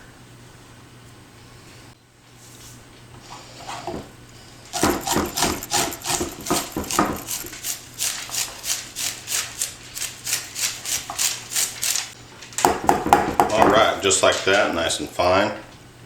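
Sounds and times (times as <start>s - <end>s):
vegetable grating on a grater: 4.8s - 12.2s.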